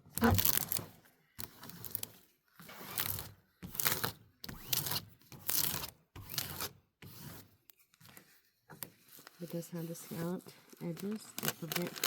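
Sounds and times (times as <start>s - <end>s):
plastic sheet crinkling: 9.2s - 12.0s.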